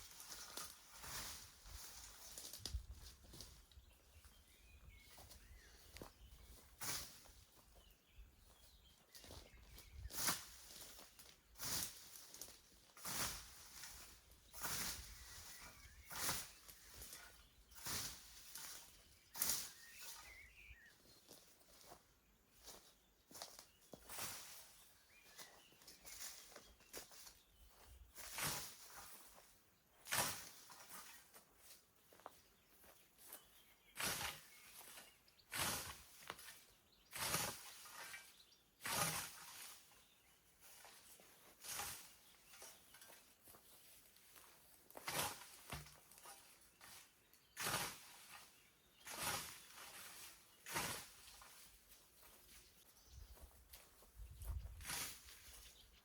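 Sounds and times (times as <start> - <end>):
scythe swishing through grass: 0.0 - 2.3, 6.7 - 7.4, 10.1 - 20.2, 28.2 - 29.4, 30.0 - 31.3, 34.0 - 40.0, 40.6 - 43.2, 45.0 - 52.6, 54.8 - 55.6
cut grass rustling: 0.0 - 3.6, 6.4 - 7.4, 10.1 - 20.4, 23.9 - 55.9.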